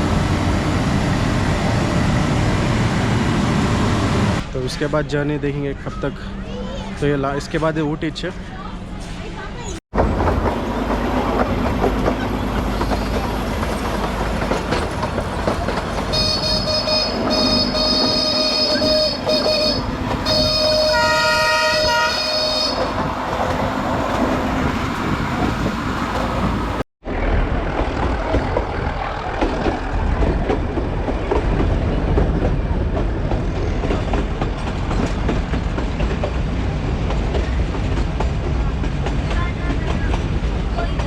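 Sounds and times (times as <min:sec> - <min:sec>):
train rumbling along track: 0:00.0 - 0:41.0
clattering train wheels: 0:10.0 - 0:25.5, 0:27.6 - 0:41.0
diesel locomotive horn blasts: 0:16.1 - 0:23.2.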